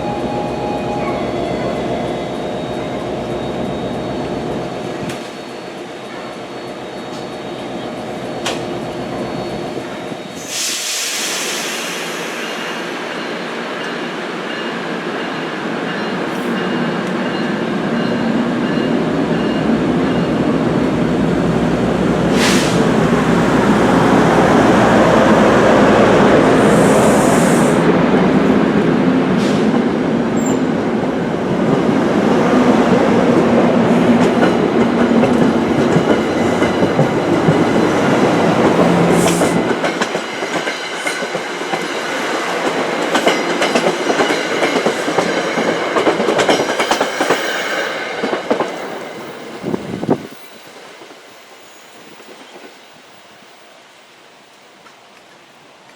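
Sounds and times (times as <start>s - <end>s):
brief hiss: 10.4s - 12.9s, 22.3s - 23.0s
train wheels clattering over rails: 32.7s - 49.8s.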